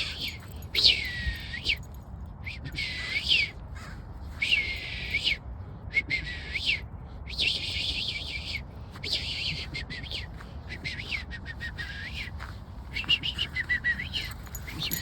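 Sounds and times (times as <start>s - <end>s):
bird scratchy high calls: 0.0s - 1.1s.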